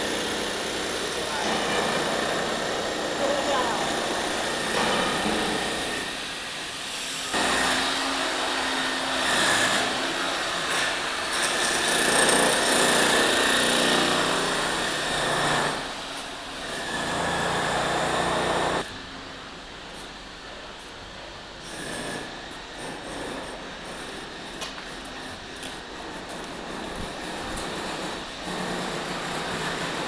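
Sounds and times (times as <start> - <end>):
power tool running loudly: 0.0 - 18.9.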